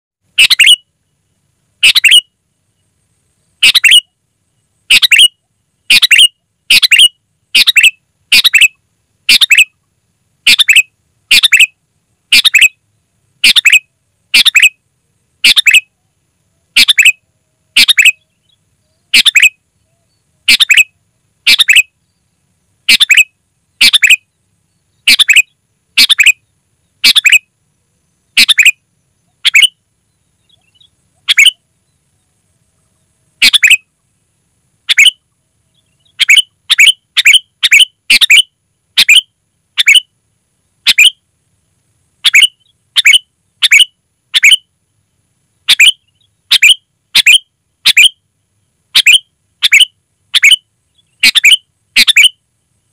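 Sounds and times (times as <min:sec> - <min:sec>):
bulbul calling: 0:00.4 - 0:00.8, 0:01.8 - 0:02.3, 0:03.6 - 0:04.1, 0:04.9 - 0:09.8, 0:10.4 - 0:12.8, 0:13.4 - 0:14.8, 0:15.4 - 0:16.0, 0:16.8 - 0:17.2, 0:17.8 - 0:21.9, 0:22.9 - 0:24.3, 0:25.0 - 0:26.4, 0:27.0 - 0:27.5, 0:28.4 - 0:29.8, 0:30.4 - 0:31.6, 0:33.4 - 0:33.9, 0:34.9 - 0:35.2, 0:35.8 - 0:40.1, 0:40.8 - 0:41.2, 0:42.2 - 0:44.6, 0:45.7 - 0:48.2, 0:49.0 - 0:52.4.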